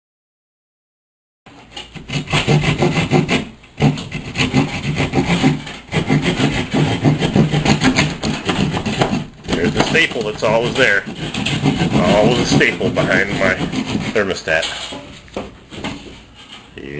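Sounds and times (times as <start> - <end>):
rough rubbing and scraping: 1.5 - 16.9.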